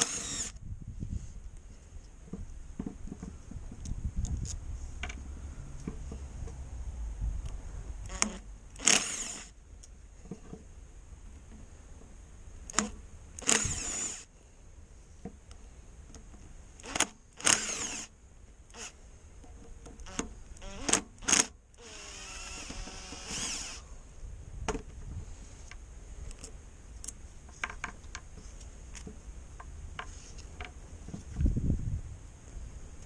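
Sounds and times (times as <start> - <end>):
power tool whirring: 0.0 - 0.6, 8.1 - 9.6, 12.7 - 14.3, 16.8 - 18.1, 18.7 - 19.0, 20.1 - 23.8.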